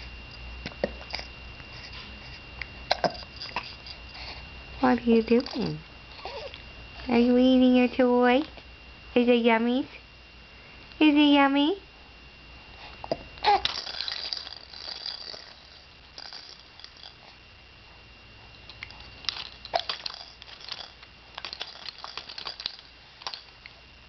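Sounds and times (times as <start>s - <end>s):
baby chewing a toy: 0.6s - 4.4s, 12.9s - 17.4s, 18.5s - 23.8s
crinkling and rattling clicks: 13.4s - 17.2s, 18.6s - 23.8s.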